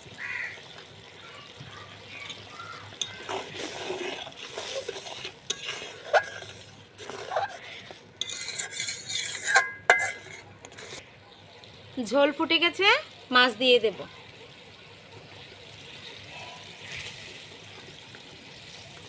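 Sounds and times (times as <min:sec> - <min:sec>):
spoon scraping a pan: 0:02.2 - 0:11.1
spoon clinking against pan: 0:08.2 - 0:10.4.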